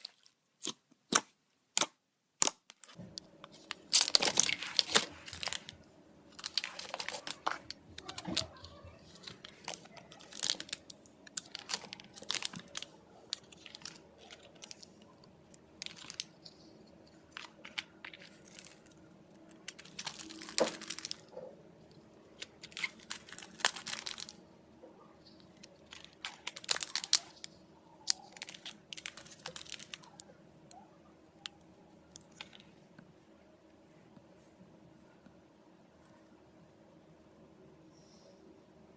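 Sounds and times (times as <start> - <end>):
slime crackling by hand: 0.0 - 21.4, 25.5 - 30.3.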